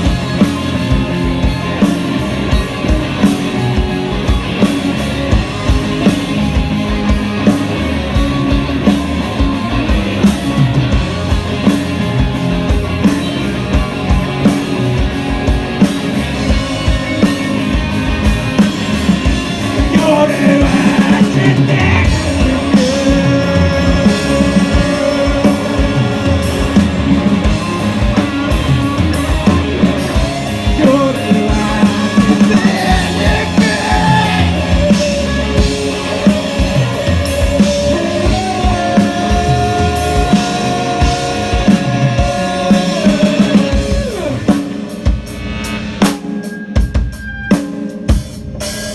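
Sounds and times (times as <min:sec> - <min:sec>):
gliding pitched guitar lines: 0:00.0 - 0:47.5
rock band playing live: 0:00.0 - 0:48.9.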